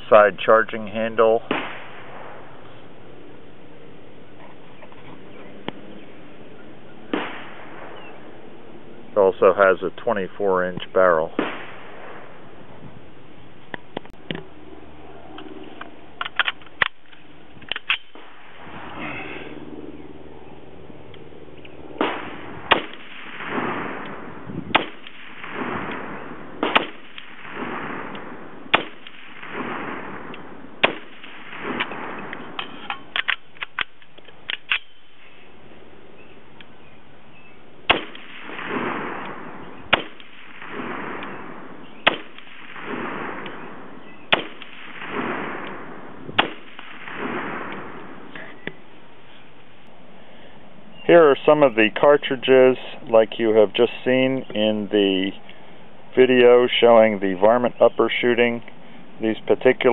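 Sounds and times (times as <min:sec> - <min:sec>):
rifle shots with echo: 0:00.9 - 0:02.8, 0:05.7 - 0:08.5, 0:09.5 - 0:12.6, 0:16.2 - 0:19.5, 0:21.8 - 0:35.2, 0:37.8 - 0:48.4.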